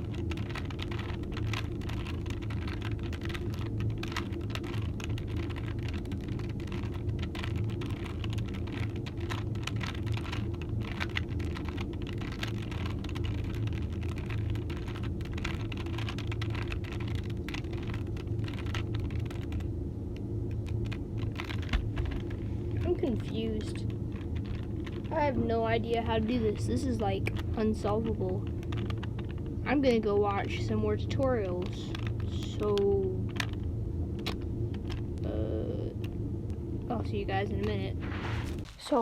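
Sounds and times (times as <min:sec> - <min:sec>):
puzzle cube clicking: 0:00.0 - 0:19.7
steady low hum: 0:00.0 - 0:39.0.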